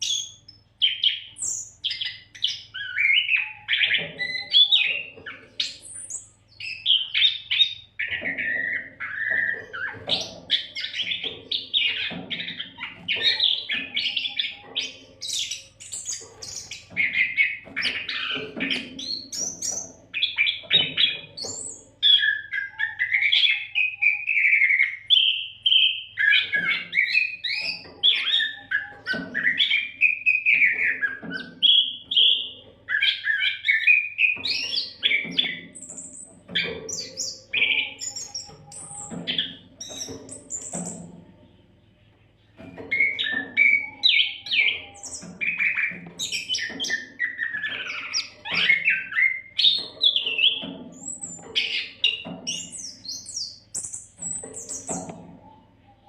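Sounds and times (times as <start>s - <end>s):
bird singing whistles and chatter: 0.0s - 41.0s, 42.6s - 56.0s.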